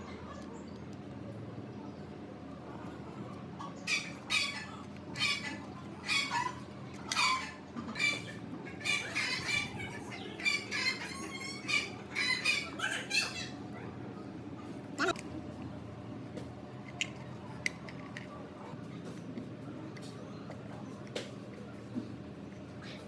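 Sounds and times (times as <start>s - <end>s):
low background hum: 0.0s - 23.0s
bird squawking: 3.6s - 13.6s.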